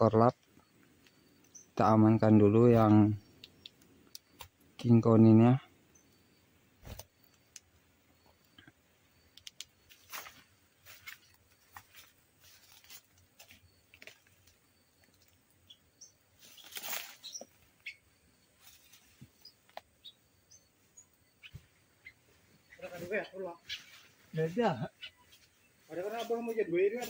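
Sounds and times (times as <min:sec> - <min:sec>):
small birds chirping: 0:00.0 - 0:27.0
hands rustling and clicking: 0:09.3 - 0:09.7.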